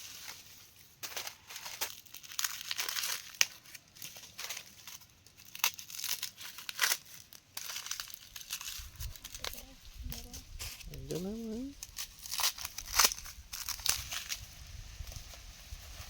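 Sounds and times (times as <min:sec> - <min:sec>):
leaves rustling and crackling: 0:00.0 - 0:16.0
plant stems snapping: 0:11.8 - 0:14.4.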